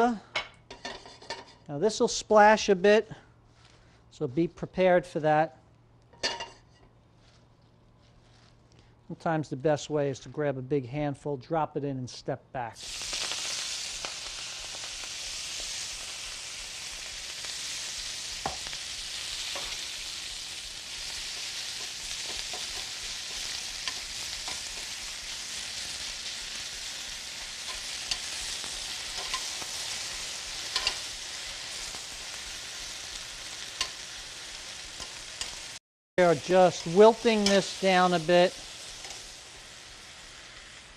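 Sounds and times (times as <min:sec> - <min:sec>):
vegetables sizzling in a pan: 0:12.8 - 0:40.9.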